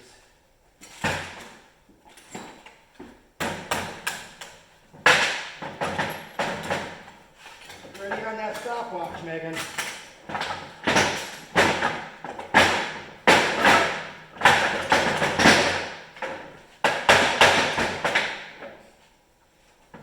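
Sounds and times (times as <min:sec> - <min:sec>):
heavy metal knocks and clanks: 0:07.8 - 0:18.5.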